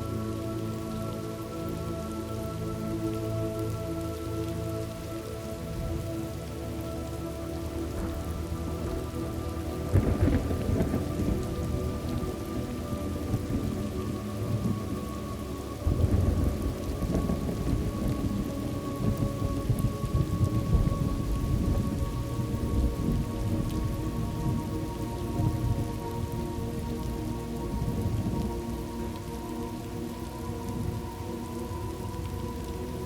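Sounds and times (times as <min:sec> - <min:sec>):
steady rain: 0:00.0 - 0:33.0
rolling thunder: 0:09.9 - 0:13.8, 0:15.8 - 0:24.8.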